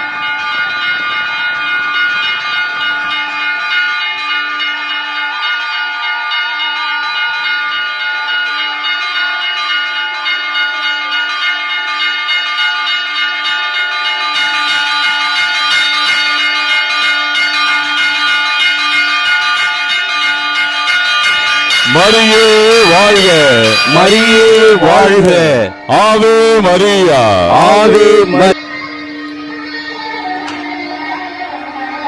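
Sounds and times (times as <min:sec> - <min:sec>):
church bells ringing: 0:00.0 - 0:32.0.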